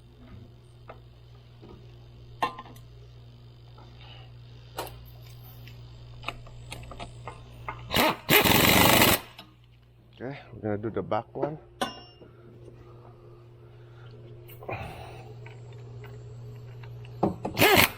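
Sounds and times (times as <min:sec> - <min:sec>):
steady low hum: 0:00.0 - 0:17.9
power tool running down bolt: 0:07.9 - 0:09.5, 0:17.2 - 0:17.9.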